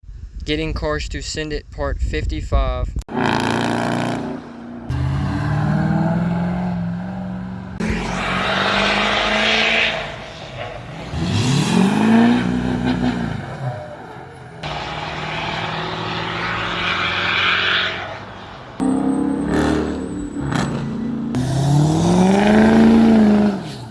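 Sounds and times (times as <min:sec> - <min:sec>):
engine passing by: 0:03.1 - 0:23.9
vehicles accelerating past: 0:03.1 - 0:23.9.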